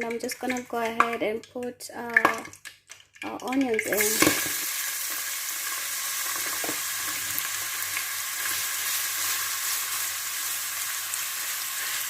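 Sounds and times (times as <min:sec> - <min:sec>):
onions sizzling in oil: 0:03.8 - 0:12.0.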